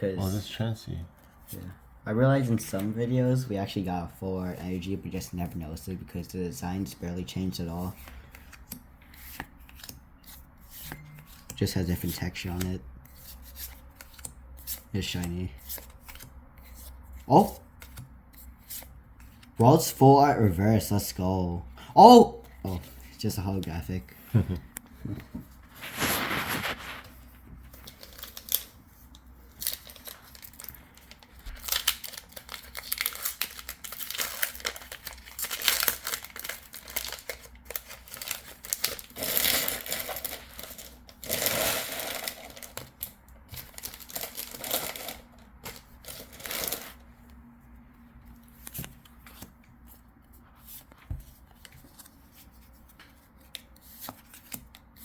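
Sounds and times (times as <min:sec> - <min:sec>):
foil wrapper crinkling and tearing: 0:25.7 - 0:27.0, 0:29.6 - 0:47.0.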